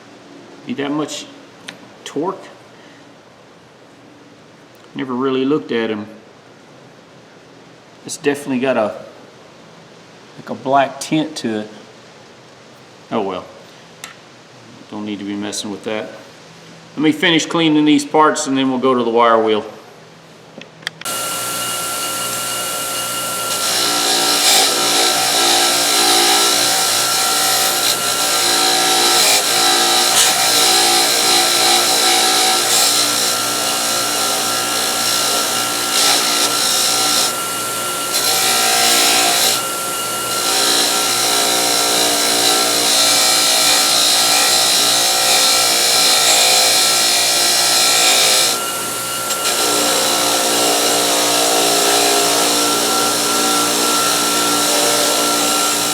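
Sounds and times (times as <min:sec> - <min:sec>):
electric wire wheel motor humming: 0:21.1 - 0:55.9
wire brush scrubbing steel: 0:21.1 - 0:55.9.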